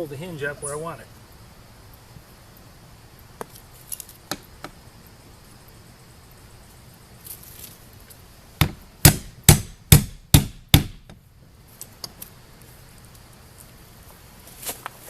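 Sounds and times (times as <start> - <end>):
hammer blows on wood: 8.6 - 11.2.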